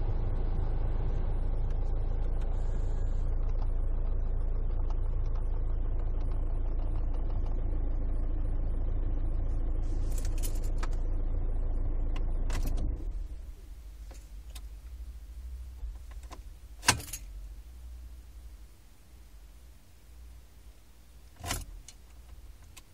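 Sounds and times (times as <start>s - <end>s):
car cabin running noise: 0.0s - 22.9s
glovebox clicking rattles: 16.0s - 17.4s.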